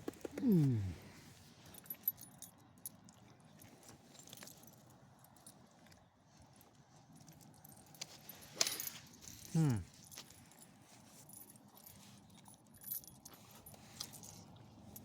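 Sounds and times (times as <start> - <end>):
light metallic jingling: 7.1 - 15.0.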